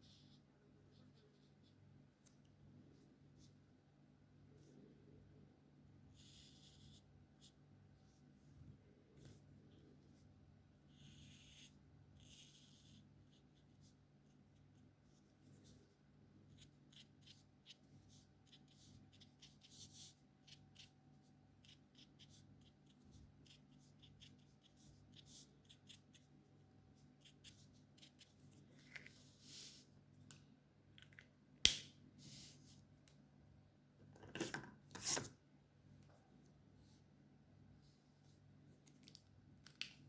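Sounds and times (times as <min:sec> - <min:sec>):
marker scratching on paper: 0:06.2 - 0:07.6, 0:10.9 - 0:14.0, 0:16.5 - 0:20.9, 0:21.6 - 0:26.3.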